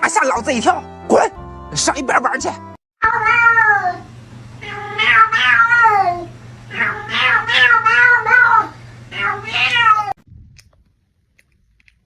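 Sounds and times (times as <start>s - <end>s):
cat yowling: 3.0s - 10.2s.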